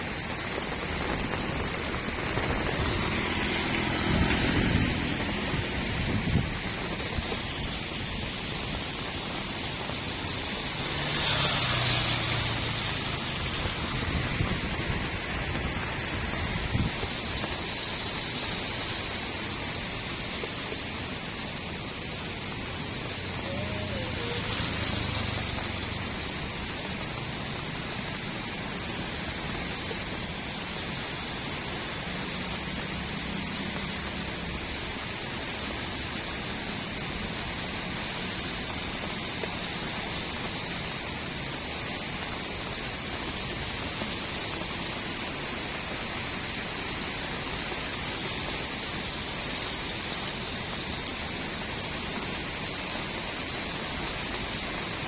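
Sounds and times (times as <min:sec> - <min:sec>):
gurgling runoff water: 0:00.0 - 0:55.0
rain on a street: 0:00.0 - 0:55.0.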